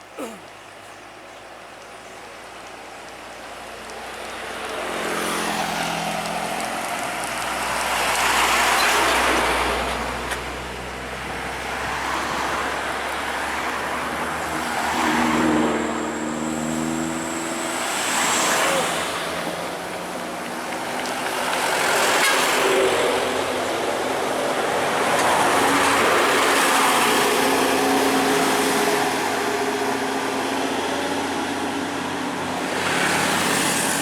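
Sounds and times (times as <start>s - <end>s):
vehicle passing: 7.2s - 34.0s.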